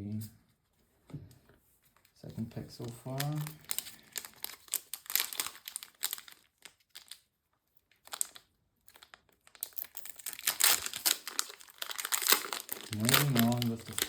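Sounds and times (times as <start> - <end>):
foil wrapper crinkling: 2.6 - 7.3, 7.9 - 14.0.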